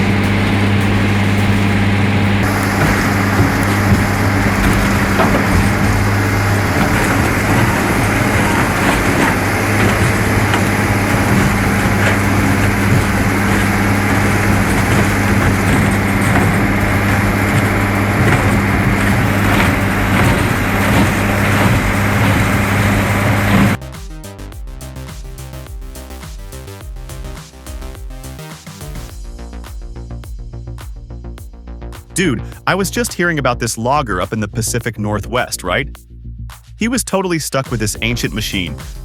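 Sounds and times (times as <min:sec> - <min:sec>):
tree shredder running: 0:00.0 - 0:23.8.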